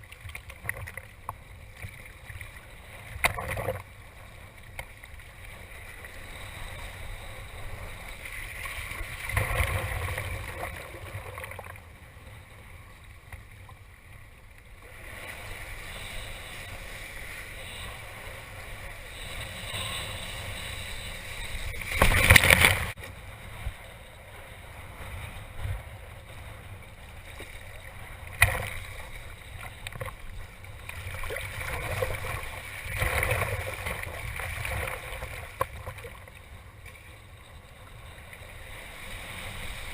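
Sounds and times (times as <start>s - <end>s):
water splashing against a surfboard: 0.0s - 11.8s, 14.8s - 23.1s, 27.2s - 37.1s.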